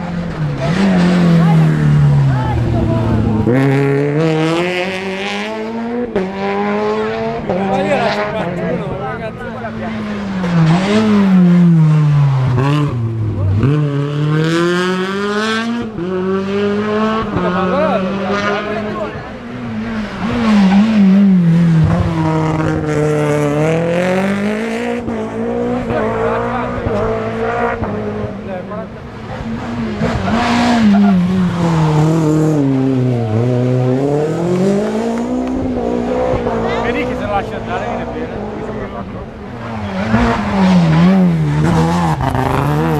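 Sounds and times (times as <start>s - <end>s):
car engine revving: 0.0s - 42.9s.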